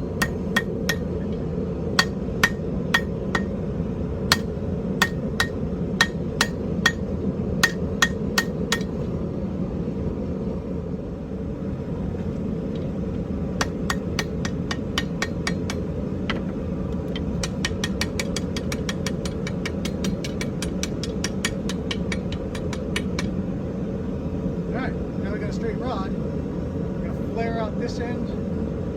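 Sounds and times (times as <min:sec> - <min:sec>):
steady low hum: 0:00.0 - 0:28.9
hammer blows on anvil: 0:00.1 - 0:01.4, 0:02.0 - 0:03.6, 0:04.3 - 0:09.0, 0:13.6 - 0:16.4.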